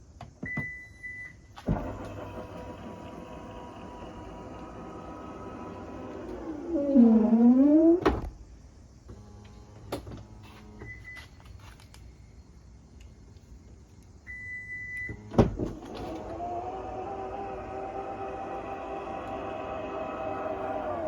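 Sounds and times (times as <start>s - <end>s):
power gate motor whine: 1.6s - 11.3s, 15.0s - 21.0s.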